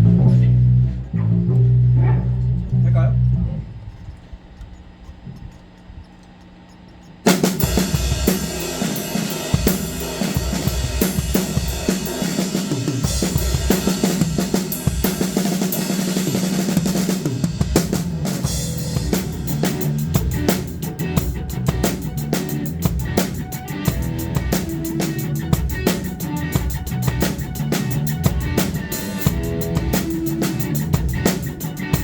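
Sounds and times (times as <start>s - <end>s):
music: 0.0s - 3.4s, 7.3s - 32.0s
low steady hum: 0.0s - 7.3s
drum kit playing a driving beat: 7.2s - 32.0s.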